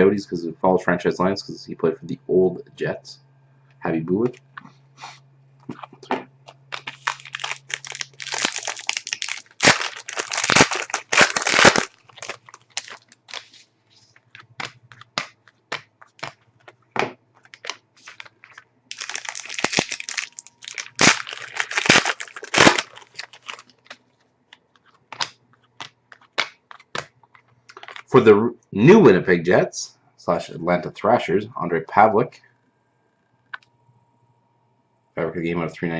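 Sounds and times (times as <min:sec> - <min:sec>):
card pack wrappers crinkling: 0:05.7 - 0:28.2
cards clicking while handled: 0:14.4 - 0:16.8, 0:24.6 - 0:28.1.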